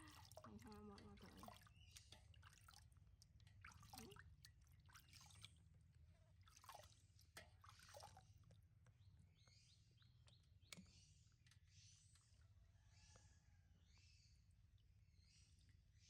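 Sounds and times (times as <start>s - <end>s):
water dripping and splashing: 0.0s - 9.2s.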